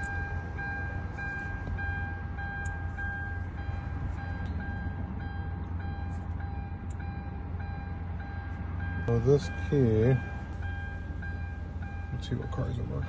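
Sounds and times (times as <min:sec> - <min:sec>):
car warning chime beeping: 0:00.0 - 0:13.0
low steady hum: 0:00.0 - 0:13.0.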